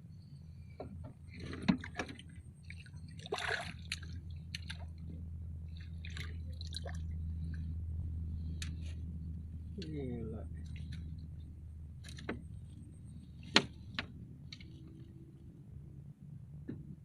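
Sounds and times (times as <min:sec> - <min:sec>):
steady low hum: 0:00.0 - 0:17.0
water splashing and dripping: 0:01.7 - 0:05.1, 0:05.7 - 0:07.7.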